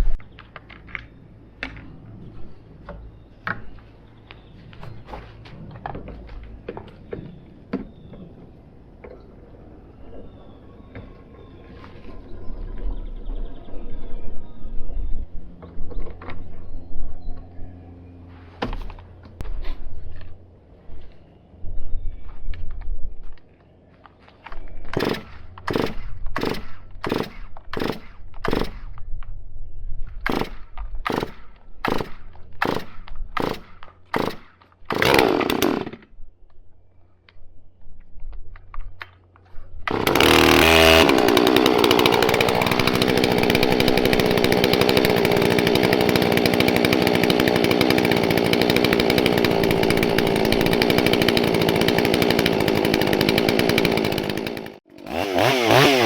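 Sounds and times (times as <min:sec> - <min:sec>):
chainsaw starting and running: 0:24.9 - 0:28.8, 0:30.3 - 0:36.1, 0:39.8 - 0:56.0.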